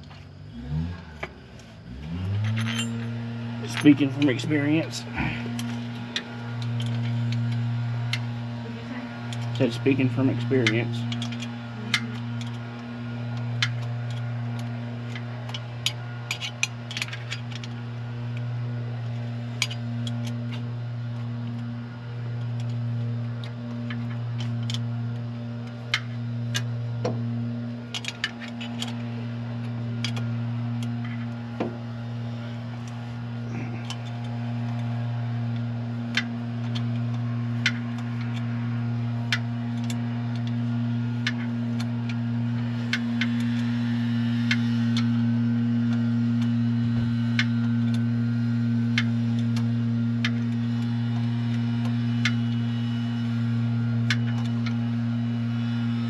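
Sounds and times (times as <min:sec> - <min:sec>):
steady low hum: 0:00.0 - 0:56.0
metallic clinks of hand tools: 0:02.3 - 0:05.8.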